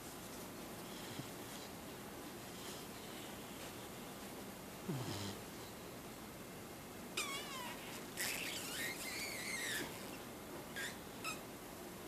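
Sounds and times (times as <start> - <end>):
monkey squeaky calls: 7.2 - 10.0.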